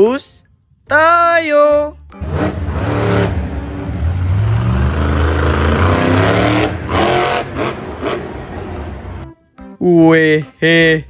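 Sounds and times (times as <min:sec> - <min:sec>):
bus engine running and revving: 0:02.1 - 0:09.3.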